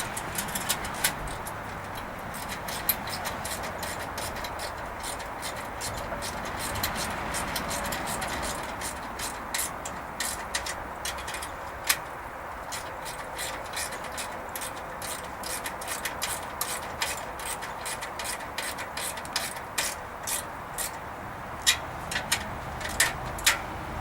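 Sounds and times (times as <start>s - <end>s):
sharp mechanical clicks: 0.0s - 21.0s, 21.6s - 23.7s.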